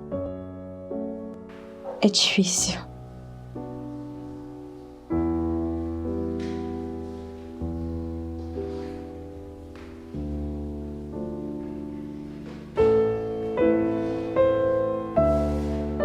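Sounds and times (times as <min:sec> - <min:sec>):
slow piano music: 0:00.0 - 0:16.0.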